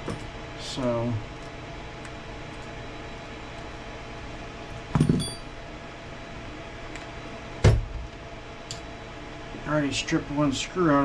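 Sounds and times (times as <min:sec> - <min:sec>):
steady low hum: 0:00.0 - 0:11.0
bright ringing tones: 0:05.0 - 0:05.5
hand tool clinking on metal: 0:05.0 - 0:05.5.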